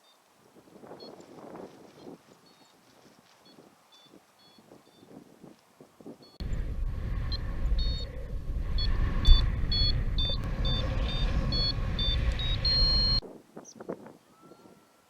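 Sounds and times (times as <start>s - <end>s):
strong wind buffeting microphone: 4.7s - 14.8s.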